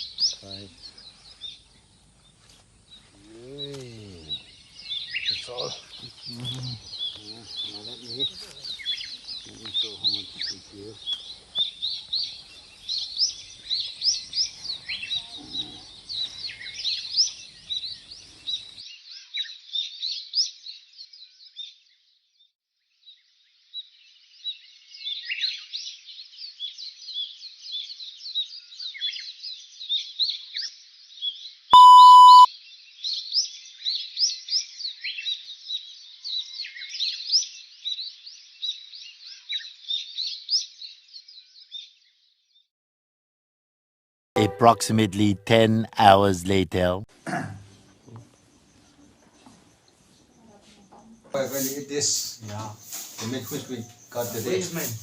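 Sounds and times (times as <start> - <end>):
small birds chirping chorus: 0.0 - 42.7, 47.2 - 55.0
electronic beep: 31.8 - 32.5.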